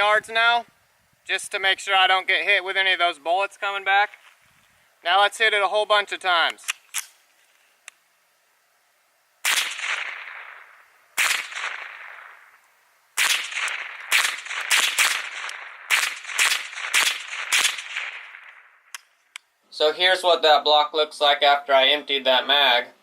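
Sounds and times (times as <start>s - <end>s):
rifle shots with echo: 9.4s - 12.6s, 13.2s - 18.8s.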